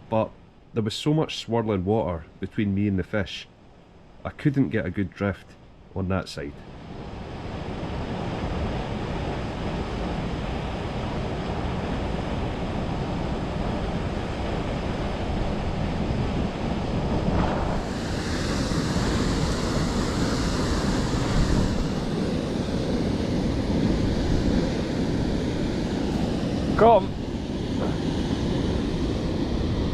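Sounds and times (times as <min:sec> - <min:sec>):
turbulent river water: 0:25.7 - 0:28.1.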